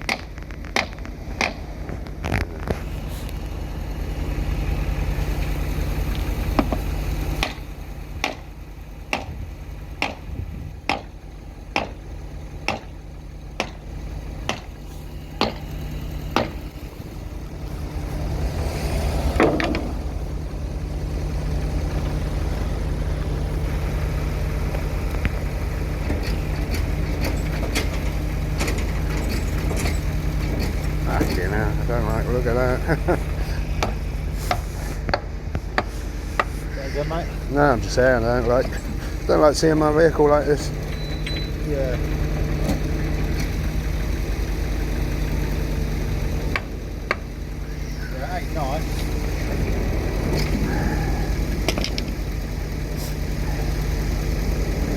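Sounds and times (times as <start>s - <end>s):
vehicle engine idling: 0.0s - 54.9s
loud drawn-out scrape or creak: 18.1s - 20.2s.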